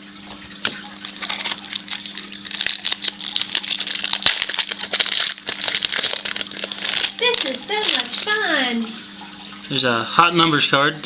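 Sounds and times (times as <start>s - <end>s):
faint electrical hum: 0.0s - 11.0s
card packs rustling and clicking: 0.6s - 8.6s.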